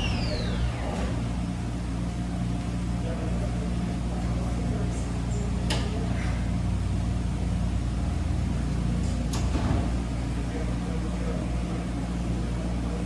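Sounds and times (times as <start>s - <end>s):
washing machine motor hum: 0.0s - 13.0s.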